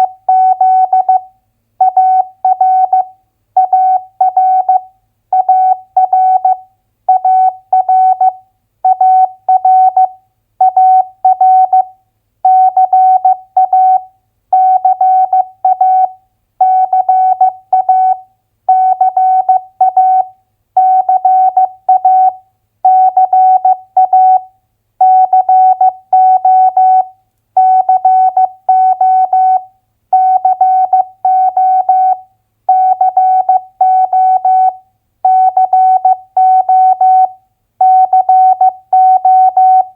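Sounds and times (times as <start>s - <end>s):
morse code beeps: 14.6s - 24.4s, 25.0s - 29.6s, 30.2s - 39.9s.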